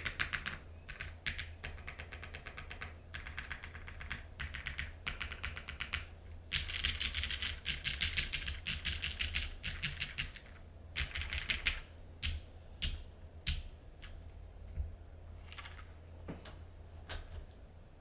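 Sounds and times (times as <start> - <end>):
mechanical keyboard typing: 0.0 - 14.2.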